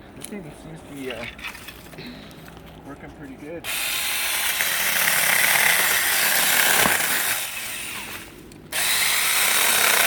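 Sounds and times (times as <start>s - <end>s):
battery chainsaw cutting: 3.7s - 10.0s.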